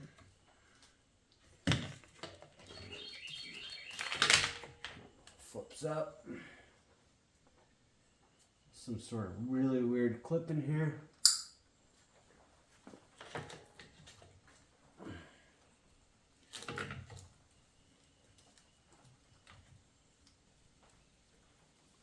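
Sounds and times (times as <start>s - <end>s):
sharp click: 11.2s - 11.6s.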